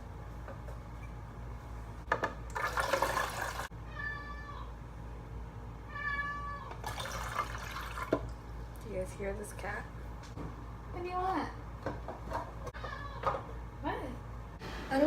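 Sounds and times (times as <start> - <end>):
cat meowing: 3.8 - 4.7, 5.9 - 6.8, 12.8 - 13.3
running water: 6.8 - 8.3.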